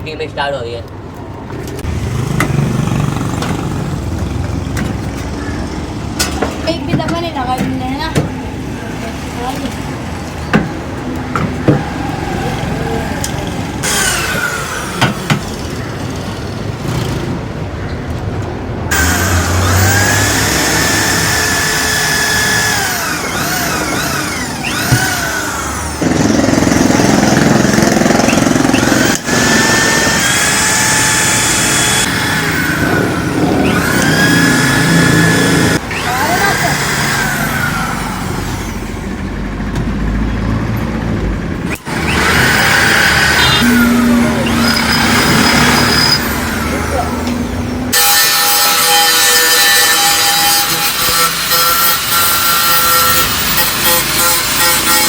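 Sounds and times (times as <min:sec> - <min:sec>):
power tool motor whining: 0:11.8 - 0:15.8, 0:18.9 - 0:39.1, 0:41.7 - 0:55.0.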